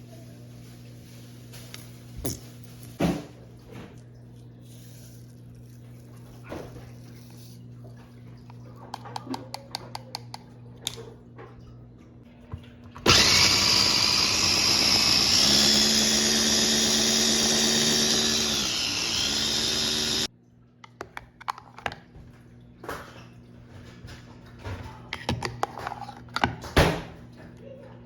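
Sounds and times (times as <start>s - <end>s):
electric food chopper motor: 13.0s - 20.3s.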